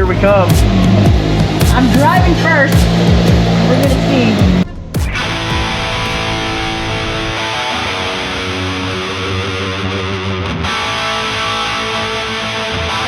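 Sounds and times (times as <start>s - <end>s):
guitar-led background music: 4.1s - 13.0s.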